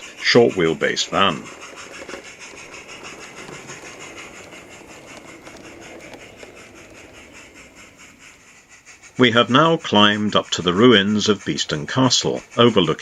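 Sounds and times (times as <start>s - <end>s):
faint fast clicking: 0.0s - 13.0s
model train wheels rattling on rail: 0.0s - 13.0s.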